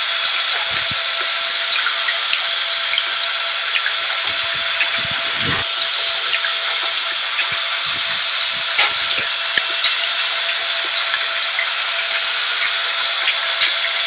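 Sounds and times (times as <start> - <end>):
vacuum cleaner motor rushing: 4.0 - 14.0.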